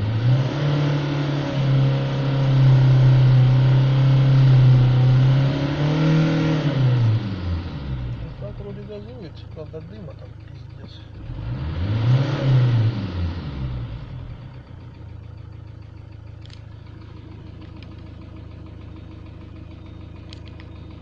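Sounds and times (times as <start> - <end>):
diesel engine revving and idling: 0.0 - 21.0
engine knock: 8.1 - 11.5, 14.1 - 21.0.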